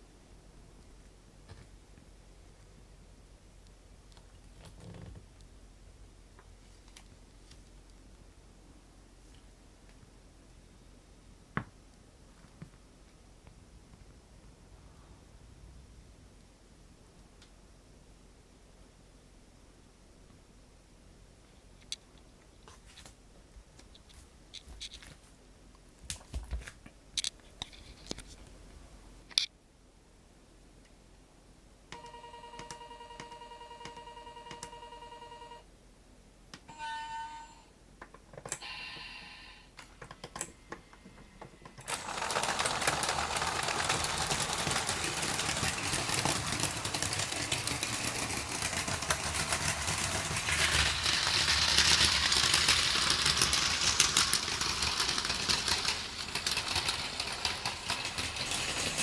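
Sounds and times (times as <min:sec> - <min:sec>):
toy trains whirring on plastic track: 0:41.8 - 0:59.0.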